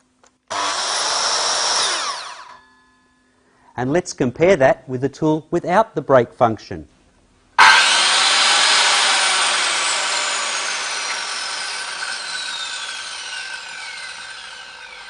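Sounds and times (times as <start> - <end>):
circular saw blade spinning down: 0.5 - 2.7, 7.6 - 15.0.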